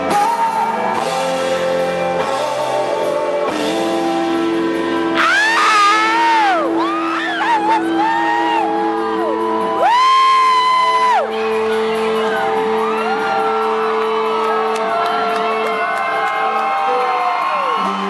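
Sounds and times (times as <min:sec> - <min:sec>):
live rock band playing: 0:00.0 - 0:18.0
fans whooping: 0:05.0 - 0:18.0.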